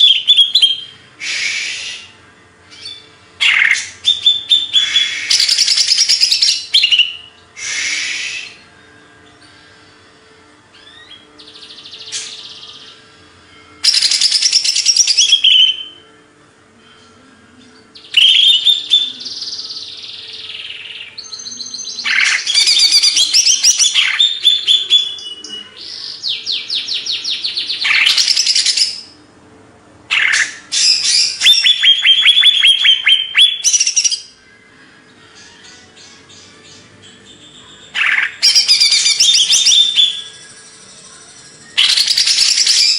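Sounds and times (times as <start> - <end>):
leafbird singing: 0.0 - 8.7, 13.8 - 16.0, 17.8 - 29.2, 30.1 - 34.4, 35.2 - 42.9.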